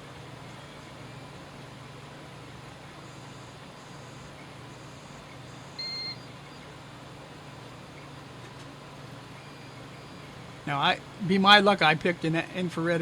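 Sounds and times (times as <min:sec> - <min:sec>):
steady low hum: 0:00.0 - 0:13.0
multimeter high beep: 0:05.7 - 0:06.6.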